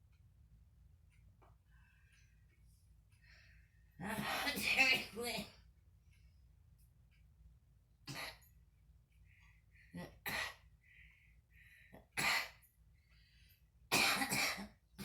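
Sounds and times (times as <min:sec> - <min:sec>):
woman coughing: 0:04.0 - 0:05.6, 0:10.0 - 0:10.6, 0:12.2 - 0:12.6, 0:13.9 - 0:14.8.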